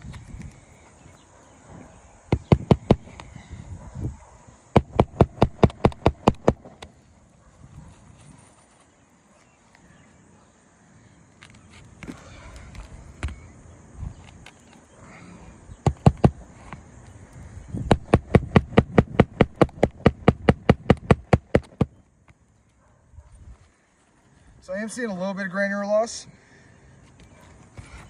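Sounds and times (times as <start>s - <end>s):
hammer striking roofing nails: 2.3s - 3.1s, 4.7s - 6.7s, 15.8s - 16.4s, 17.9s - 21.9s.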